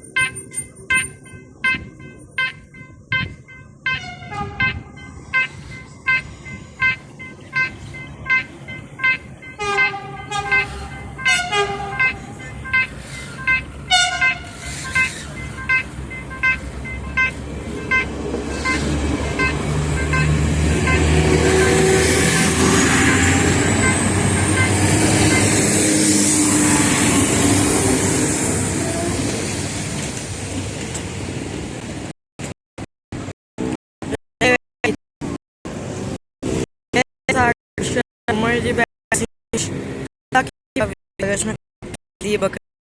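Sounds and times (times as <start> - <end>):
warning bell pinging: 0.0 - 25.8
train horn toots: 0.9 - 29.6
train passing with rumble: 2.8 - 32.1.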